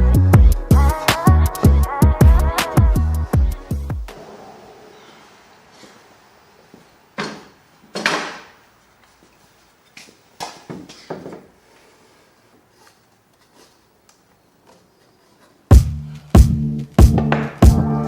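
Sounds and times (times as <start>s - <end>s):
loud music: 0.0s - 4.2s, 15.7s - 18.0s.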